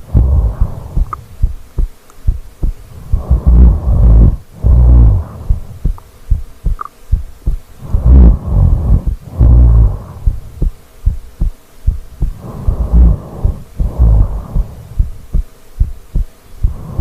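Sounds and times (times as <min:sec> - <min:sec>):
snoring breaths: 0:00.0 - 0:01.2, 0:02.9 - 0:06.0, 0:07.8 - 0:10.6, 0:12.2 - 0:15.4, 0:16.6 - 0:17.0
heartbeat thumps: 0:00.0 - 0:17.0.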